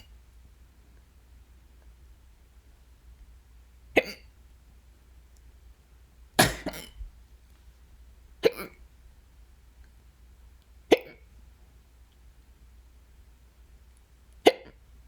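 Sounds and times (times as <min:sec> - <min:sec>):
person hiccuping: 0:04.0 - 0:04.2, 0:06.4 - 0:07.0, 0:08.4 - 0:08.8, 0:10.9 - 0:11.2, 0:14.4 - 0:14.8.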